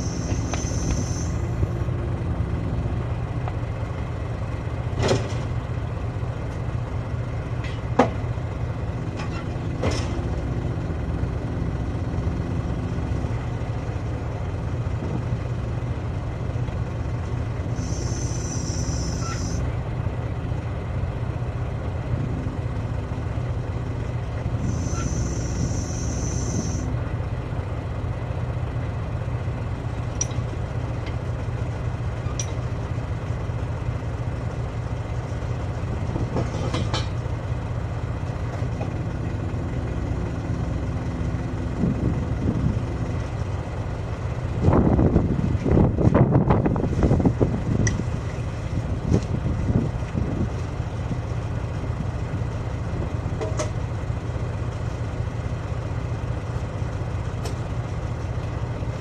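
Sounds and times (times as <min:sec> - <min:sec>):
engine idling: 0:00.0 - 0:59.0
compressed air hissing: 0:17.8 - 0:19.6, 0:24.6 - 0:26.9.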